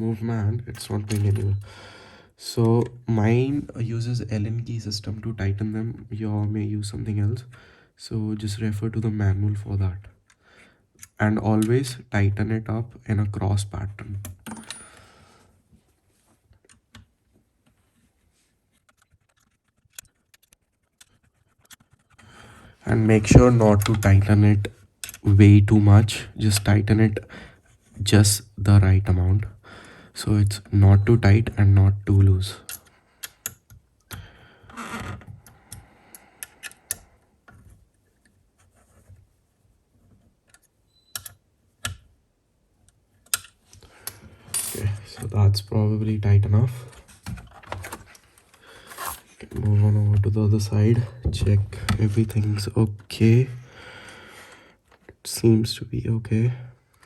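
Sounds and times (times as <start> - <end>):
allen key clicking on screws: 0.8 - 1.7, 25.0 - 25.3, 32.6 - 34.2, 40.5 - 42.0.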